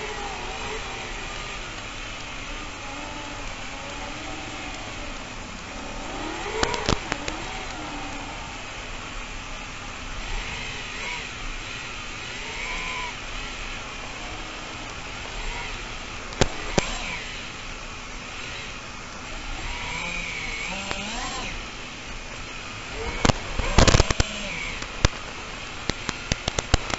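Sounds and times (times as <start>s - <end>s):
drone motors whining: 0.0s - 26.9s
steady rush of noise: 0.0s - 26.9s
sharp clicks: 5.9s - 8.2s, 14.9s - 17.8s, 19.4s - 21.6s, 22.9s - 26.9s.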